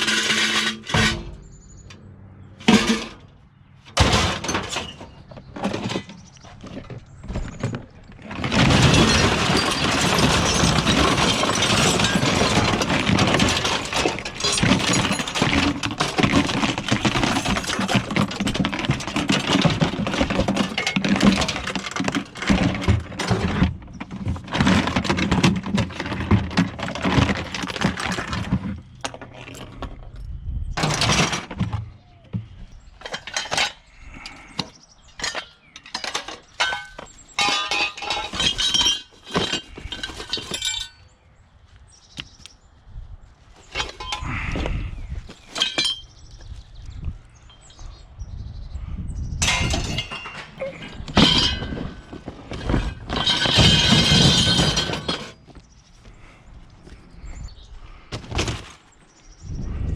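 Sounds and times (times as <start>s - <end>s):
scrap metal clanking: 0.0s - 1.9s, 2.6s - 7.6s, 8.2s - 30.0s, 30.8s - 31.9s, 33.0s - 41.0s, 43.6s - 46.2s, 49.4s - 55.6s.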